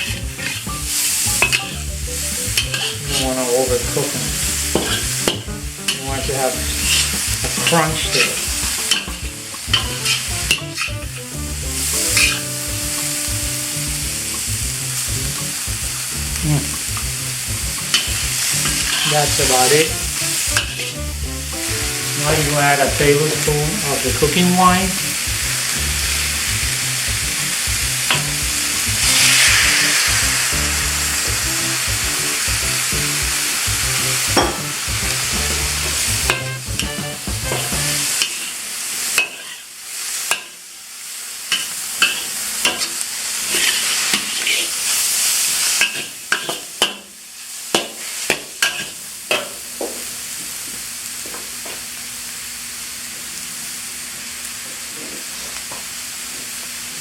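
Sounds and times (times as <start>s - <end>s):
spatula scraping a pan: 0.0s - 3.5s, 6.7s - 11.0s, 41.6s - 42.9s, 43.5s - 44.8s, 45.8s - 46.7s
food sizzling in a pan: 0.0s - 57.0s.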